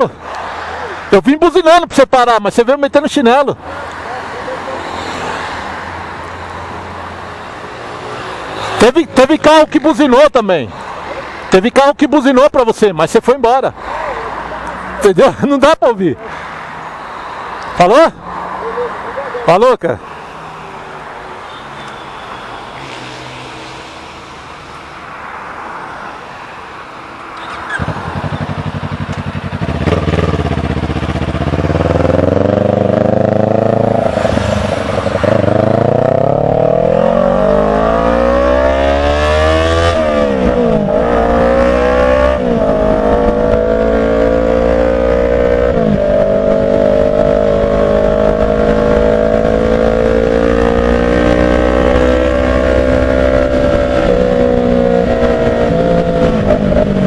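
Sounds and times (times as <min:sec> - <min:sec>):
motorcycle engine accelerating: 0:27.4 - 0:57.0.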